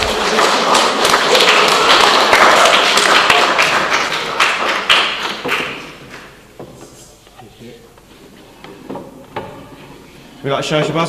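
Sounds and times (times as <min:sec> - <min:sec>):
audience clapping: 0:00.0 - 0:06.4.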